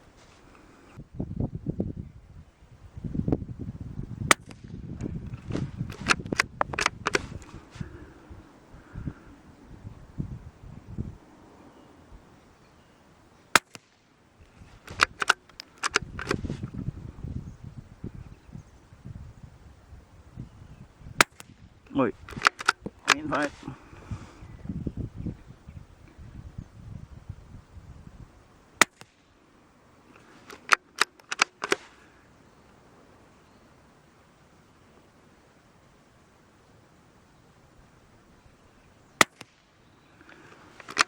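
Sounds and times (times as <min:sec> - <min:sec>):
rifle shot: 0:04.3 - 0:07.5, 0:13.5 - 0:14.0, 0:21.2 - 0:21.6, 0:28.8 - 0:29.2, 0:39.2 - 0:39.7
rifle bolt clicking: 0:05.9 - 0:07.5, 0:14.8 - 0:16.4, 0:22.3 - 0:23.5, 0:30.5 - 0:31.9, 0:40.8 - 0:41.0
handling thuds: 0:21.2 - 0:23.8.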